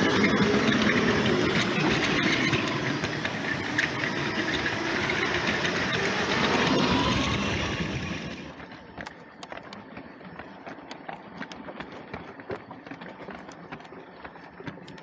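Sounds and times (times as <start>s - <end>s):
toy train motor and wheels: 0.0s - 8.6s
wheels clicking over track joints: 0.0s - 15.0s.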